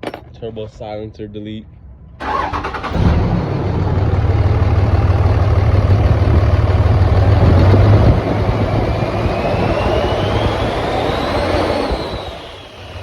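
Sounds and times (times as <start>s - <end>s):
diesel engine rumbling: 0.0s - 13.0s
turbo whistle rising in pitch: 8.4s - 13.0s.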